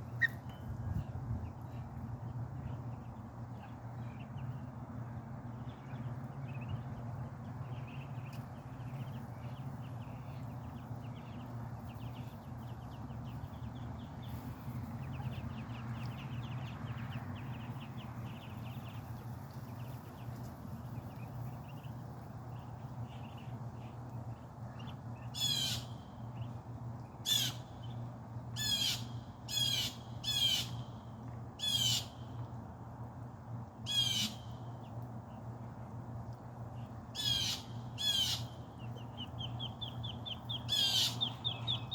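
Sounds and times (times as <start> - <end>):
ducklings peeping: 0.0 - 41.9
steady low hum: 0.0 - 41.9
bird harsh calls: 25.4 - 26.0, 37.2 - 41.9.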